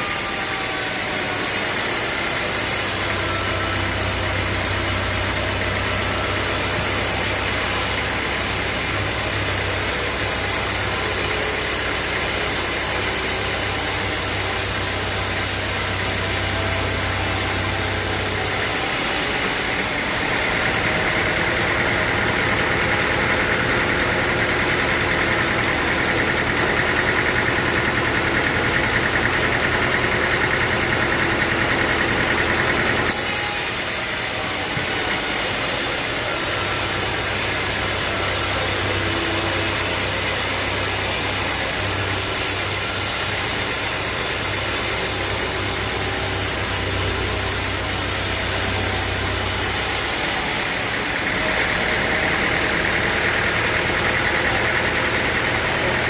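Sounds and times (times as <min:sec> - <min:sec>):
high-pitched whine and hiss: 0:00.0 - 0:24.3
sawmill engine running: 0:00.0 - 0:56.0.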